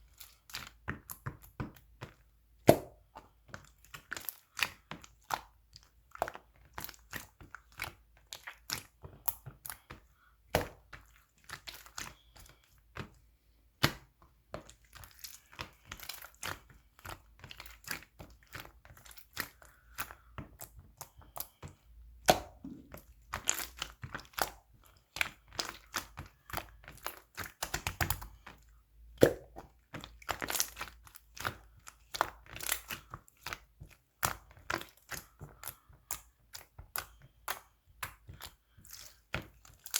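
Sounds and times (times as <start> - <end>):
slime crackling and popping: 22.2 - 28.5, 29.2 - 39.9.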